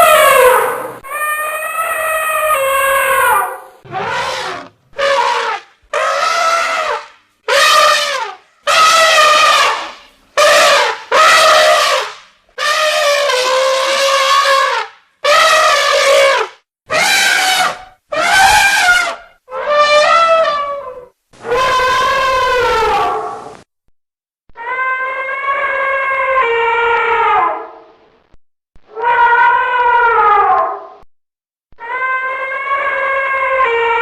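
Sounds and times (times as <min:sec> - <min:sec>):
elephant trumpeting: 0:00.0 - 0:23.5.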